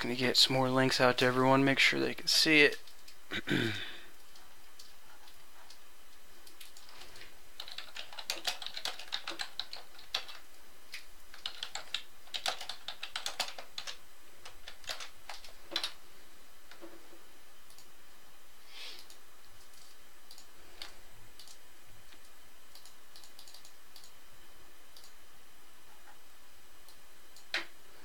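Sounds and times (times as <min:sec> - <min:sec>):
computer keyboard typing: 0:02.7 - 0:03.2, 0:06.4 - 0:16.0, 0:19.0 - 0:21.6, 0:22.2 - 0:24.1.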